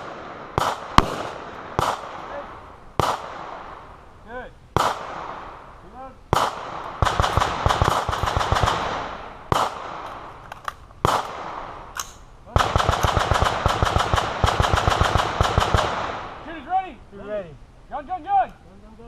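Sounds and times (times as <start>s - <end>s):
rapid gunfire: 0.0s - 2.4s, 3.0s - 3.5s, 6.3s - 10.0s, 12.5s - 16.3s
single gunshots: 0.0s - 3.8s, 4.8s - 5.6s, 6.3s - 10.3s, 11.0s - 11.9s, 12.5s - 16.5s.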